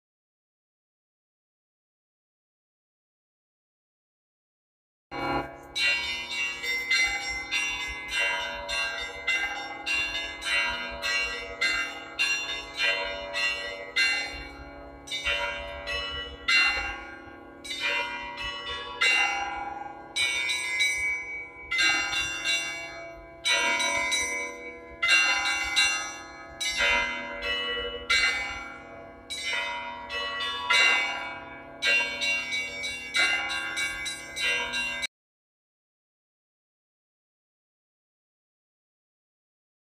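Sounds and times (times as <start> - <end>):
church bells ringing rhythmically: 5.1 - 35.1.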